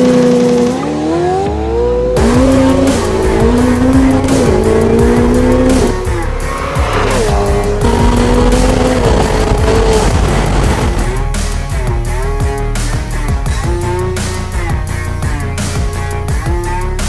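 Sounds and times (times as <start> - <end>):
car engine revving high: 0.0 - 11.2.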